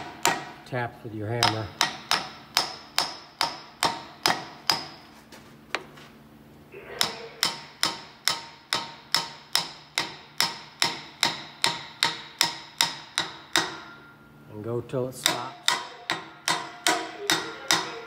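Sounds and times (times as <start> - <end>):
hammer tapping metal: 0.0 - 0.6, 1.4 - 5.0, 7.0 - 14.2, 15.2 - 18.0.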